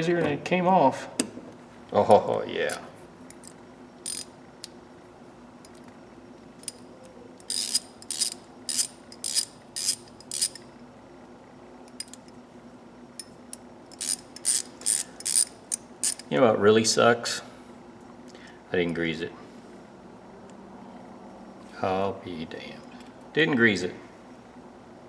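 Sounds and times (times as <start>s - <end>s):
socket ratchet clicking: 3.3s - 4.8s, 6.6s - 6.8s, 7.4s - 10.6s, 11.9s - 12.3s, 13.2s - 16.3s.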